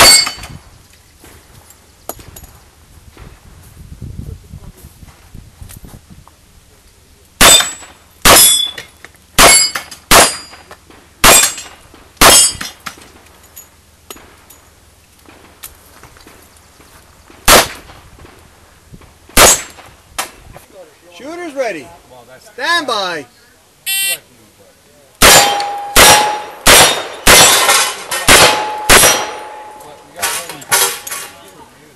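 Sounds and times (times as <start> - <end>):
steel targets ringing: 0.0 - 0.5, 7.4 - 12.7, 25.2 - 31.3.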